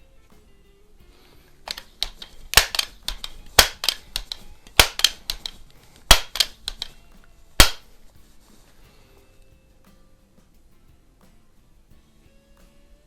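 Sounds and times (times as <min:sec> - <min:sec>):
air rifle clacks: 0:00.3 - 0:11.6
light clicks: 0:01.7 - 0:08.0.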